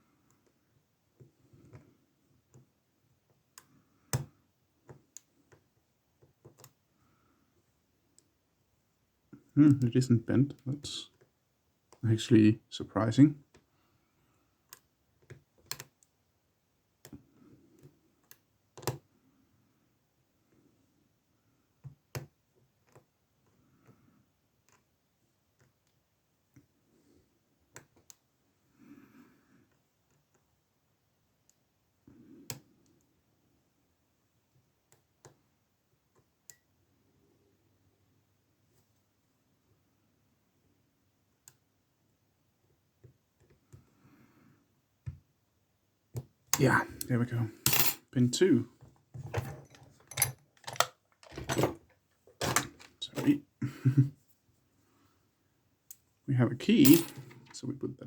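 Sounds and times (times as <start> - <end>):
lock pick clicking in padlock: 50.0 - 51.6.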